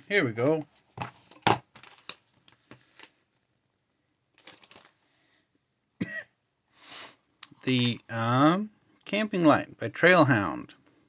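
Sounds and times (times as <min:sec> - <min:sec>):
packaged items rustling in a box: 0:04.4 - 0:05.0.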